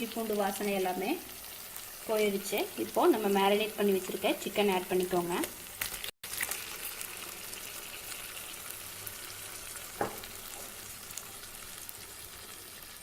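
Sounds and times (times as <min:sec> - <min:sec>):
chicken sizzling in oil: 0:00.0 - 0:13.0
knock: 0:10.0 - 0:10.4.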